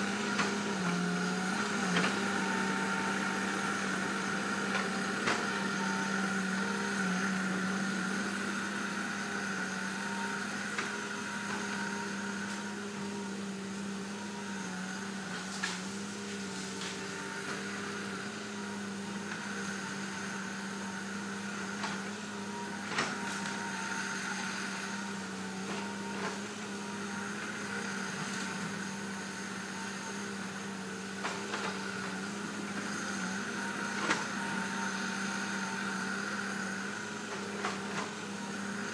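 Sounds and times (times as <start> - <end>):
heavy diesel machinery running: 0.0 - 38.9.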